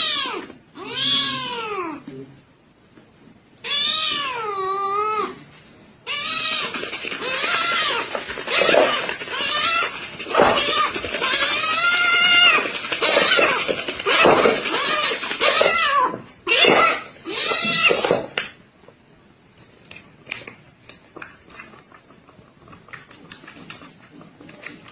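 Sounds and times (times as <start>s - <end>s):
kitten meowing: 0.0s - 2.0s, 3.6s - 5.4s, 6.0s - 18.1s.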